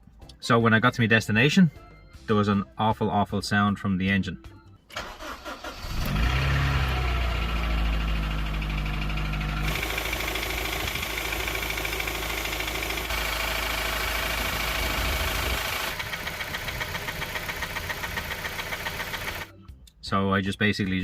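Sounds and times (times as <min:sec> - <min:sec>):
car engine running: 0:05.7 - 0:19.5
fast even engine ticking: 0:06.8 - 0:19.5.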